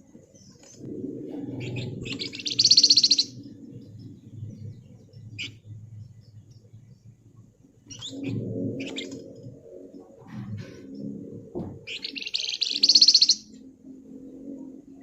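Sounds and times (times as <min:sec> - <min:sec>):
songbird rattling trill: 0:01.8 - 0:04.1, 0:11.9 - 0:13.5.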